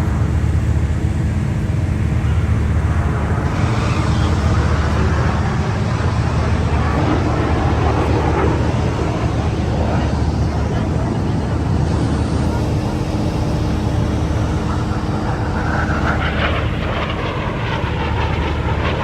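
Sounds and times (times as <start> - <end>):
aircraft engines roaring: 0.0 - 19.0
harsh hissing roar: 2.2 - 9.9.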